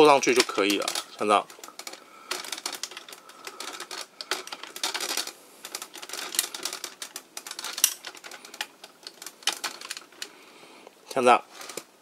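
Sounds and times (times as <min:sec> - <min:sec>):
plastic toy parts clicking: 0:00.0 - 0:10.3.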